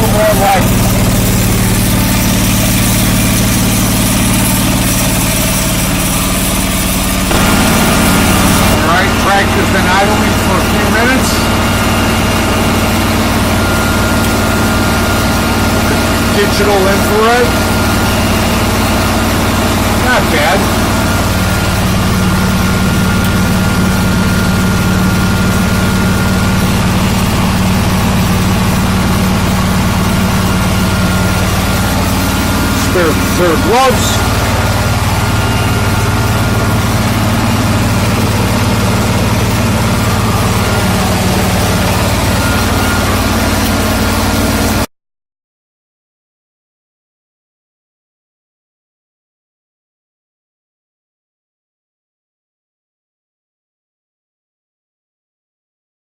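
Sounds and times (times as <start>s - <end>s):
garden tractor engine idling: 0.0s - 44.8s
thin steady whine: 0.0s - 44.8s.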